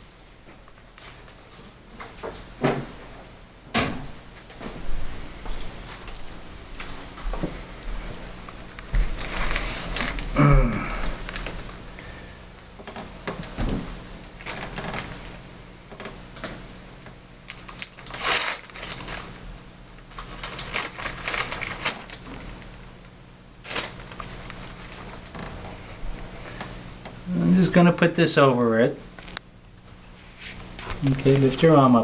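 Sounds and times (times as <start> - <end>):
rustling and crinkling supplies: 4.4 - 15.4, 17.5 - 22.8, 23.6 - 26.7, 30.0 - 32.0.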